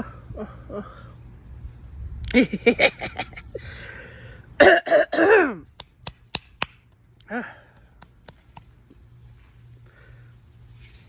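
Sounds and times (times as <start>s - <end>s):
woman coughing: 4.6s - 5.6s.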